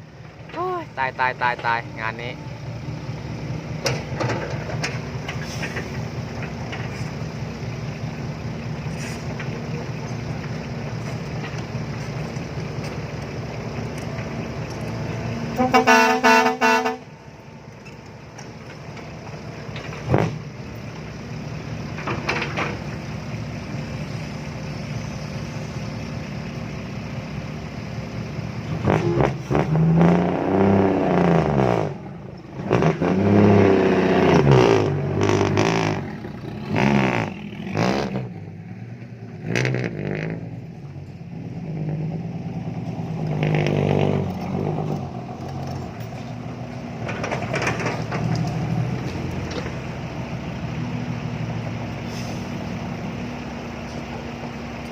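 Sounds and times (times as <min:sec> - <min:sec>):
truck engine revving: 0:00.0 - 0:54.9
vehicle horn: 0:15.6 - 0:17.1.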